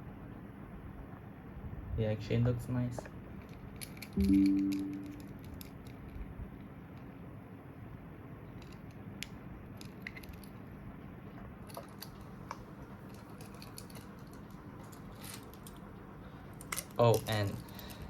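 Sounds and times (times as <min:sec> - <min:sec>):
faint low hum: 0:00.0 - 0:07.2.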